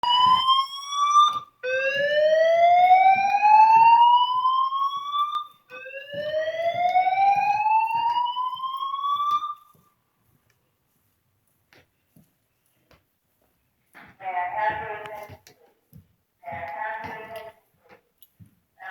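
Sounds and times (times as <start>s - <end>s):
fire alarm slow whoop: 0.0s - 9.8s.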